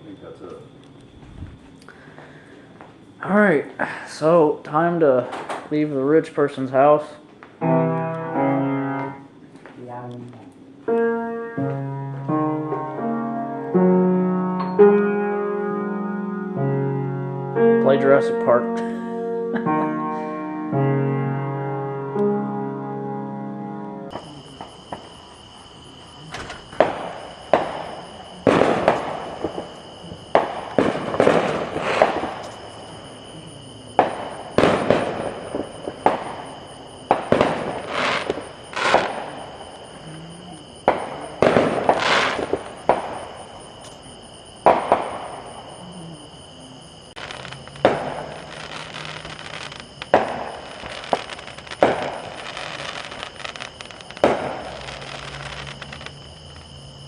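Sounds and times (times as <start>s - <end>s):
fireworks bangs: 4.2s - 9.2s, 24.1s - 57.0s.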